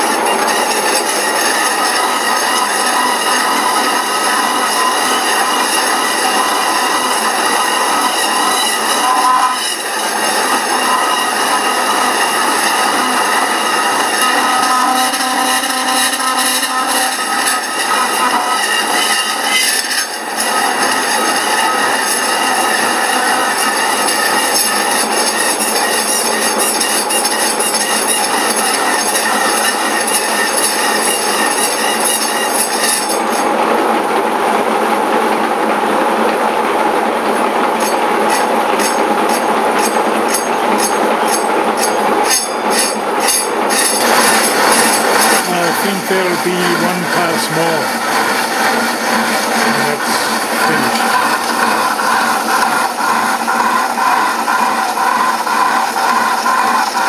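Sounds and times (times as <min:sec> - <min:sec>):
power saw cutting metal: 0:00.0 - 0:33.8, 0:37.4 - 0:57.0.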